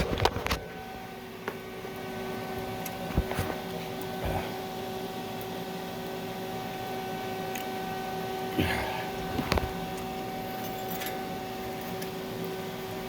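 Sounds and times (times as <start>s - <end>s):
welding machine hum: 0.0s - 13.0s.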